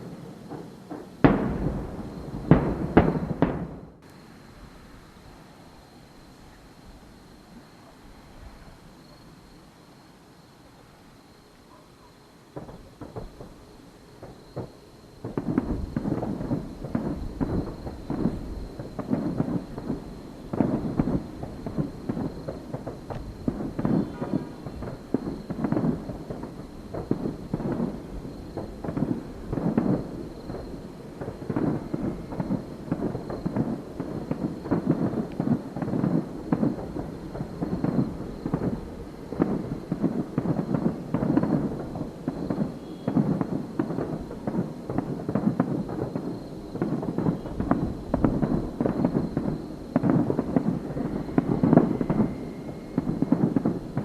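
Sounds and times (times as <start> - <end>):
fireworks booming and crackling: 0.0 - 4.8, 12.5 - 54.0.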